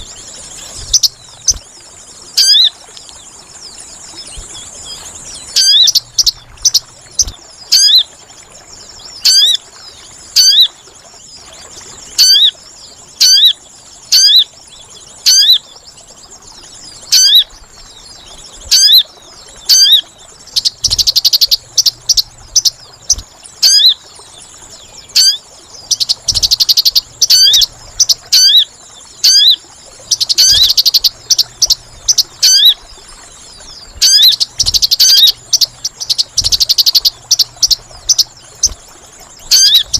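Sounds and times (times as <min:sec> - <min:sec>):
rapid dense bird chattering: 0:00.0 - 0:01.6, 0:05.5 - 0:08.0, 0:19.7 - 0:24.0, 0:25.2 - 0:32.9, 0:33.9 - 0:38.8, 0:39.4 - 0:39.9
high hooked bird chirps: 0:00.0 - 0:01.7, 0:05.2 - 0:08.0, 0:19.7 - 0:24.0, 0:25.1 - 0:33.0, 0:33.6 - 0:39.9.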